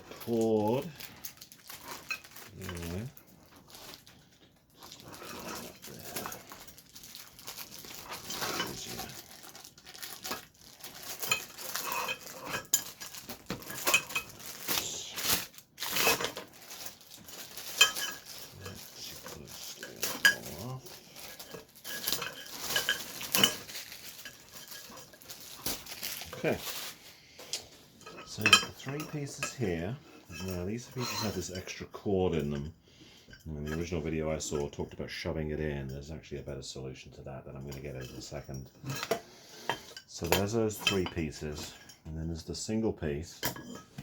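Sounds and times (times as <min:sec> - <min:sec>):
lamp pole sections clinking: 0:11.1 - 0:14.7, 0:16.0 - 0:26.7, 0:28.0 - 0:32.7, 0:37.6 - 0:42.1, 0:43.4 - 0:44.0.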